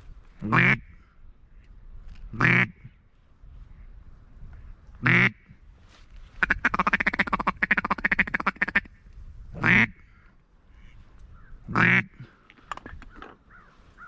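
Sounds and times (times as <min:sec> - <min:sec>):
duck quacking: 0:00.4 - 0:01.0, 0:02.3 - 0:02.9, 0:05.0 - 0:05.4, 0:06.4 - 0:08.9, 0:09.6 - 0:10.0, 0:11.7 - 0:12.3.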